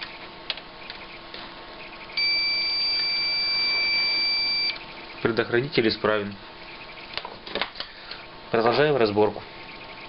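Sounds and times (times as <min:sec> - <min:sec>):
multimeter continuity beep: 0:00.8 - 0:05.5, 0:06.6 - 0:07.3, 0:09.6 - 0:10.0.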